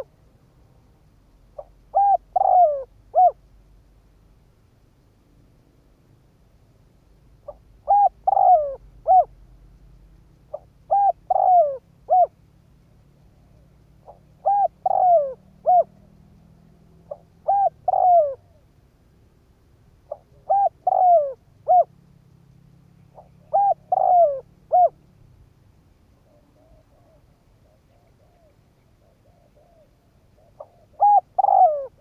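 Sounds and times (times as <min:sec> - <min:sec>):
dove cooing: 0:01.5 - 0:03.5, 0:07.4 - 0:09.4, 0:10.5 - 0:12.4, 0:13.3 - 0:18.8, 0:20.0 - 0:22.0, 0:23.1 - 0:25.1, 0:26.1 - 0:32.0.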